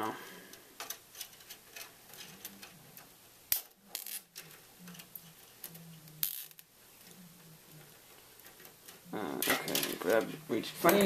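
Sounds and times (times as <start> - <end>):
zip ties ratcheting: 6.2 - 6.7.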